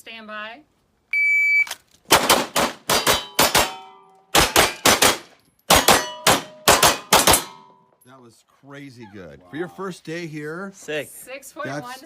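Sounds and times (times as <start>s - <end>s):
shot timer beep: 1.1s - 1.8s
pistol shots: 2.1s - 7.6s
steel targets ringing: 5.8s - 7.9s.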